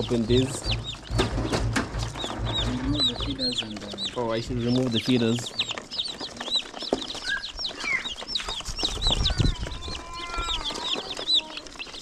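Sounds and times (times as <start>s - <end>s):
low rumble: 0.0s - 4.9s
chicks peeping: 0.0s - 12.0s.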